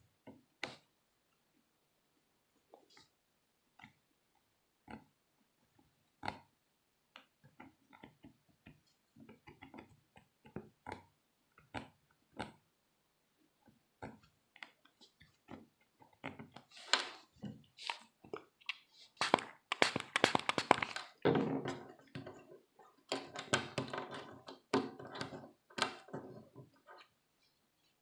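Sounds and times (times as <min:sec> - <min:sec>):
small tool clicking and scratching: 0:18.7 - 0:21.1.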